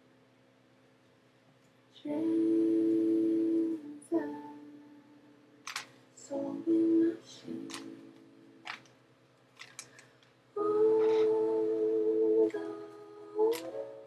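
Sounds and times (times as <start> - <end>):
sharp clicks: 5.6 - 5.9, 9.6 - 10.3.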